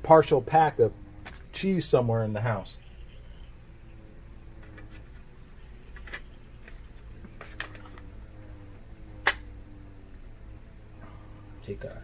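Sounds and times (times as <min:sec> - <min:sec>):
steady low hum: 0:00.0 - 0:12.0
packet handling clicks and taps: 0:05.9 - 0:08.1.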